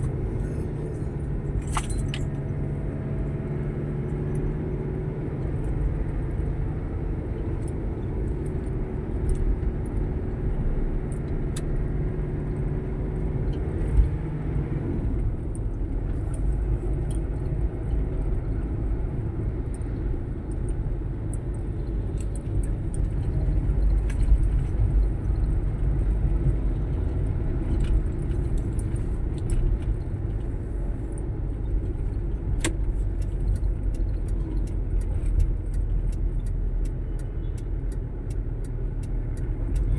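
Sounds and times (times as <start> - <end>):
engine hum: 0.0 - 39.9
traffic engine and road rumble: 0.0 - 39.9
light ticks and rattles: 19.7 - 39.9.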